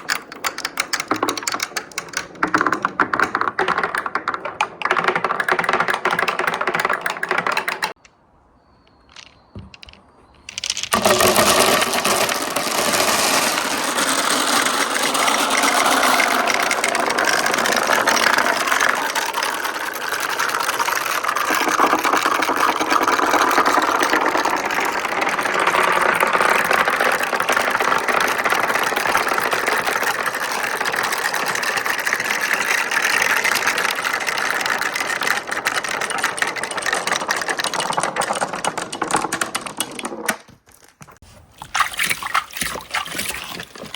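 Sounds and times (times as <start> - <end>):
marbles rattling along wooden track: 0.0 - 8.0, 8.8 - 40.4, 41.8 - 43.9.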